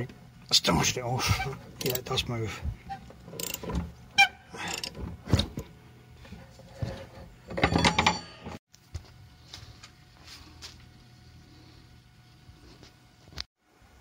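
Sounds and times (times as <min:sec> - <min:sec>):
ringing metallic clanks: 0:07.6 - 0:08.6.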